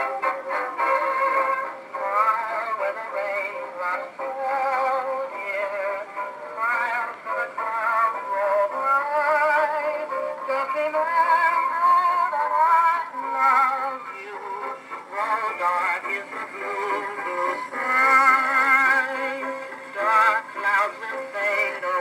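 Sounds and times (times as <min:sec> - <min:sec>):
old phonograph record music: 0:00.0 - 0:22.0.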